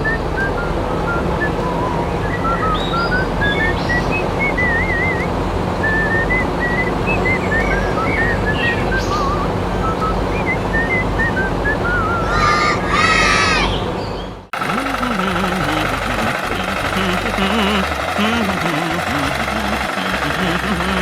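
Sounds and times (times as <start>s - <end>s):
high chirping whistles: 0.0s - 13.8s
wavy trills: 0.0s - 13.9s, 14.5s - 21.0s
steady droning hum: 14.6s - 21.0s.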